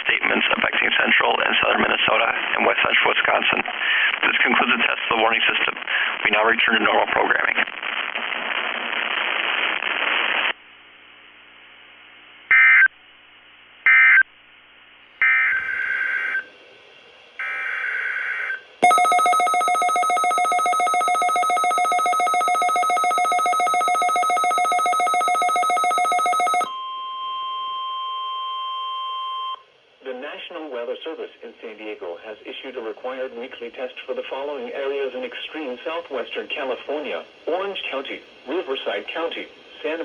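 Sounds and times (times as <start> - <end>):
buzzy pulsing alarm tone: 18.8 - 26.7
warbling data bursts: 18.8 - 26.7
steady single-pitch alarm tone: 18.8 - 27.0.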